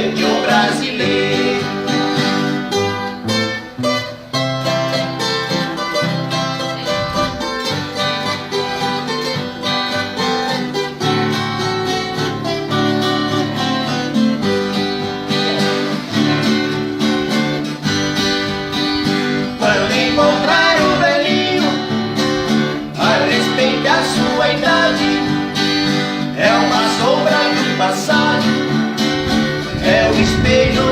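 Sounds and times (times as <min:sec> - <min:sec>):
plucked acoustic guitar melody: 0:00.0 - 0:30.9
bass line: 0:05.6 - 0:09.0, 0:26.3 - 0:30.9.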